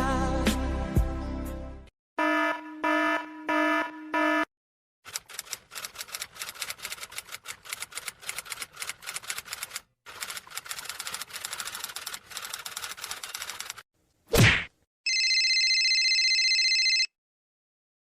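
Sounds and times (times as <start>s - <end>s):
rapid keyboard typing: 5.1s - 13.8s.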